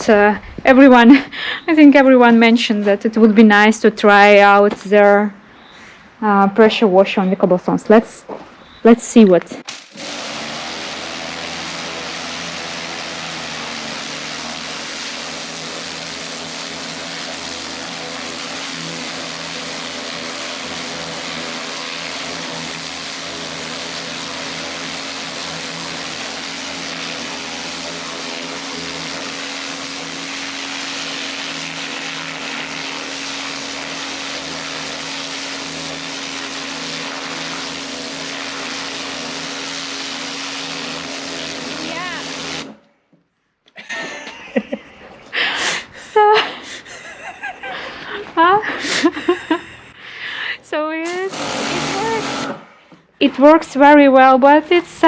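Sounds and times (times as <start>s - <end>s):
pressure washer motor hum: 9.6s - 42.9s, 48.8s - 55.0s
high-pressure water jet hissing: 9.7s - 42.8s, 51.0s - 52.6s.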